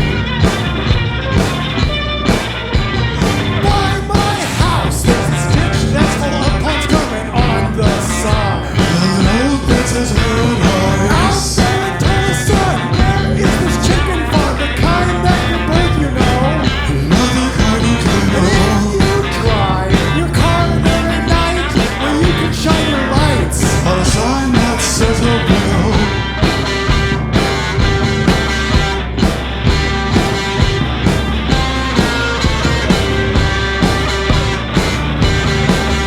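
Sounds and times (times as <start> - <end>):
rock song with full band: 0.0 - 36.0
singing: 3.6 - 26.3.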